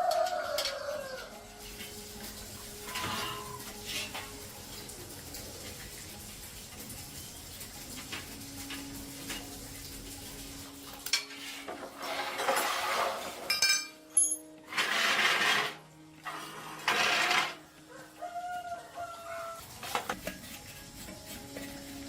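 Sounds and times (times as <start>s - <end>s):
metal parts clinking: 13.5s - 14.6s.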